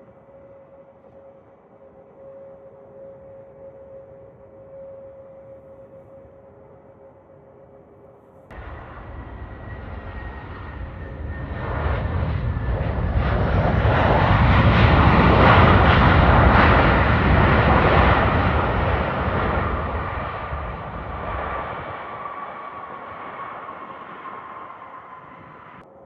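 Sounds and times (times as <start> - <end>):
airliner engines passing: 8.5 - 26.0.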